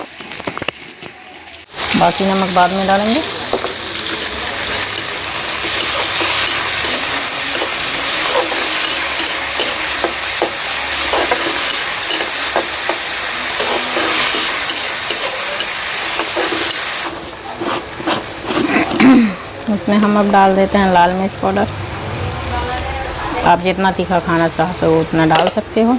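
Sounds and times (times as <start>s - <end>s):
vegetables sizzling in hot oil: 0.0s - 25.9s
spoon scraping and tapping a pan: 4.7s - 16.8s.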